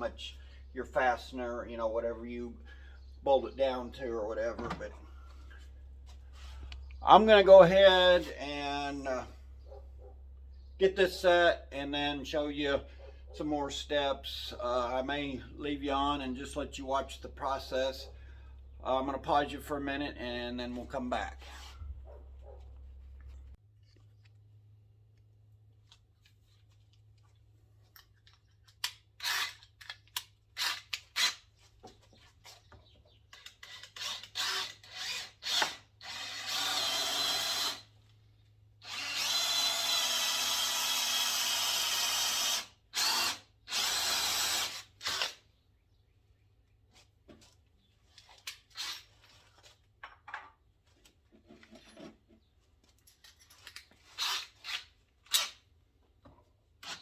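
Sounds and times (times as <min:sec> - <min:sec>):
power drill running: 0:33.6 - 0:37.9, 0:38.8 - 0:45.4.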